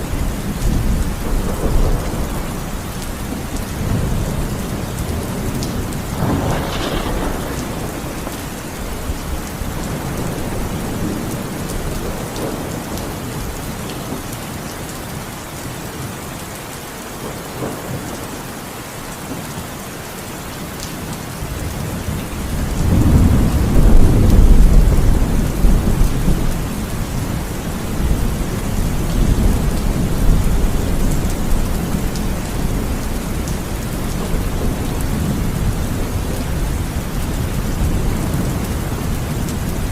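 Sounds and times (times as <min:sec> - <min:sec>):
thunder rumbling: 0:00.0 - 0:13.6, 0:21.6 - 0:39.9
heavy rain: 0:00.0 - 0:39.9.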